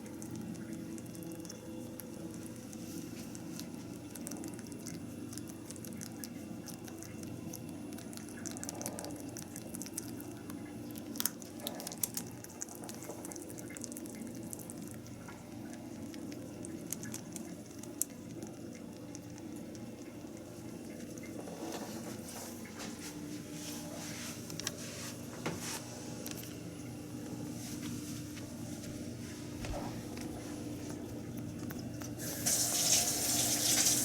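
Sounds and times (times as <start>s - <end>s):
rabbit licking clicks: 0.0s - 22.8s
low room hum: 0.0s - 34.0s.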